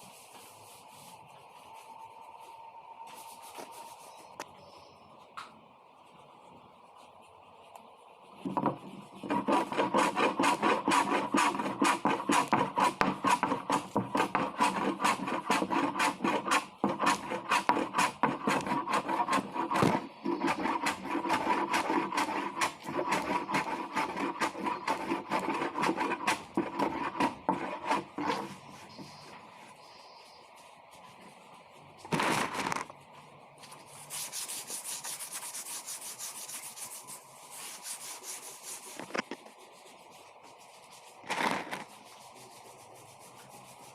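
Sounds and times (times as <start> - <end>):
sandpaper rubbing on wood: 8.8 - 29.2, 33.9 - 43.9.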